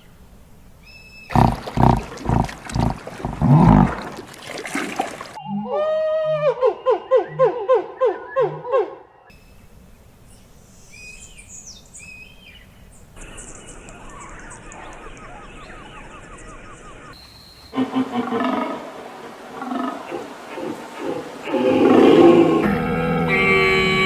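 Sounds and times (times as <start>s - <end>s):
faint chirping calls: 0.0s - 4.0s, 5.4s - 24.0s
deep animal roar: 1.3s - 4.2s, 17.8s - 24.0s
fast ticking call: 22.6s - 24.0s.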